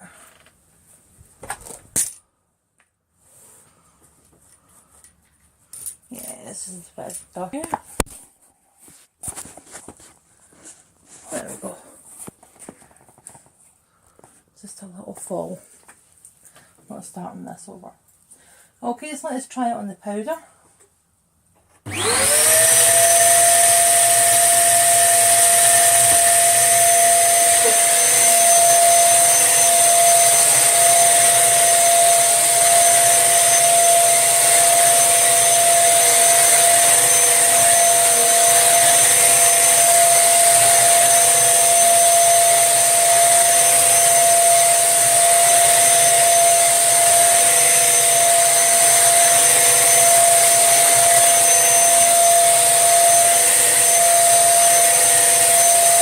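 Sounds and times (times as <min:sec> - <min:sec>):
vacuum cleaner motor: 0:21.9 - 0:56.0.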